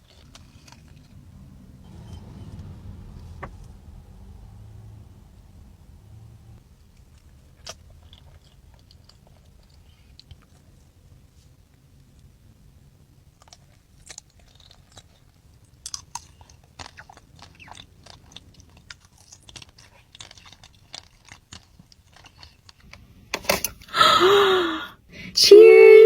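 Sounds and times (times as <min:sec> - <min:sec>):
person chewing pastry: 0:00.0 - 0:01.4, 0:06.8 - 0:23.2.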